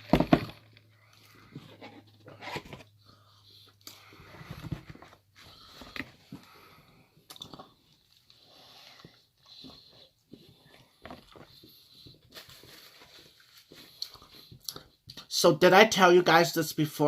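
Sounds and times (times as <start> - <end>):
person chewing food: 5.9 - 12.3, 13.7 - 15.2.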